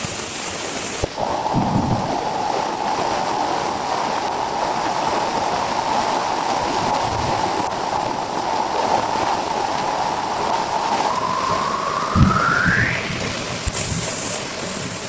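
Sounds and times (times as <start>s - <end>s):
torrential rain pouring: 0.0s - 15.0s
sound rising in pitch: 11.0s - 13.7s.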